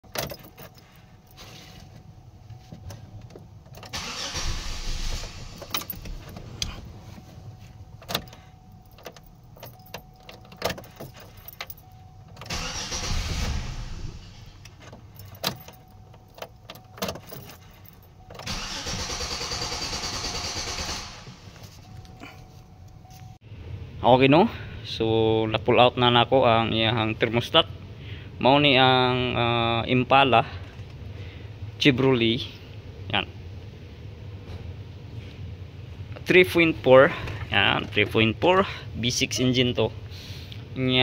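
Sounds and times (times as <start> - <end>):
car engine cranking: 2.8 - 23.2.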